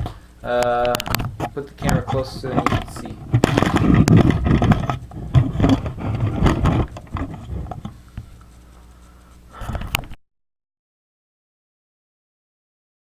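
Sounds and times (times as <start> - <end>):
clicks and knocks: 0.0 - 8.0
faint steady hum: 0.0 - 10.2
camera handling rumble: 0.6 - 8.6, 9.6 - 10.2.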